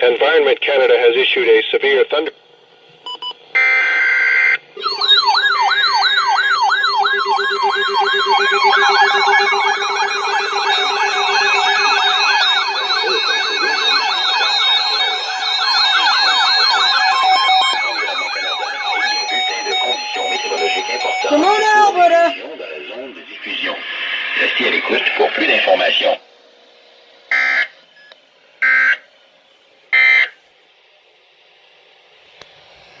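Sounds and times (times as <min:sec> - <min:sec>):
siren-like sweeping alert tone: 0:03.6 - 0:22.4
stepped tones: 0:04.8 - 0:22.3.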